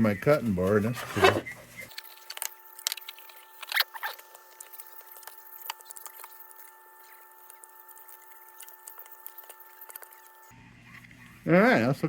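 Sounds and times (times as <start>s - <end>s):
rag scrubbing plastic phone: 0.4s - 10.5s
small clicks: 1.9s - 10.5s.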